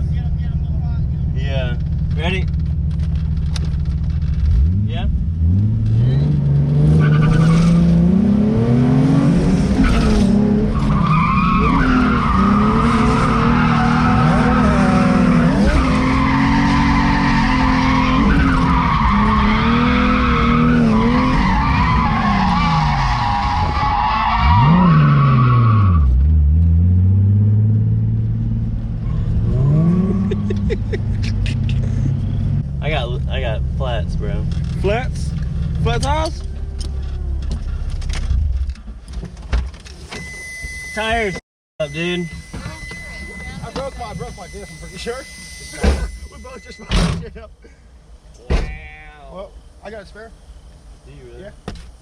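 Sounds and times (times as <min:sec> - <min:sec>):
car engine revving: 0:01.0 - 0:23.7, 0:24.3 - 0:38.6
tires squealing: 0:05.9 - 0:26.4, 0:40.2 - 0:47.3.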